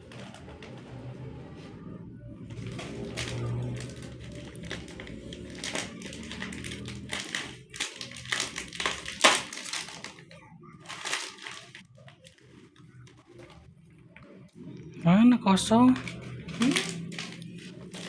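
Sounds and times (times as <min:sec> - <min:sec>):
plastic snack packets crinkling: 0:02.5 - 0:13.7, 0:15.5 - 0:18.0.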